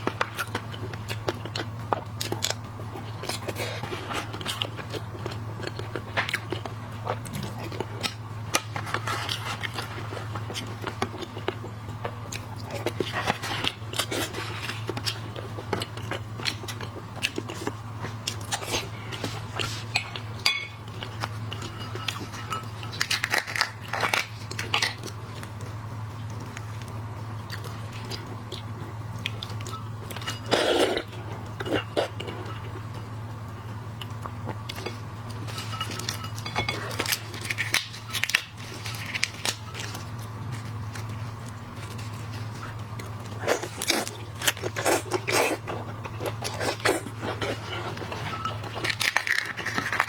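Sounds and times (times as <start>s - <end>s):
chewing: 0.0s - 33.1s, 33.7s - 50.0s
steady low hum: 0.0s - 50.0s
shells cracking and crunching: 22.8s - 25.5s, 48.5s - 50.0s.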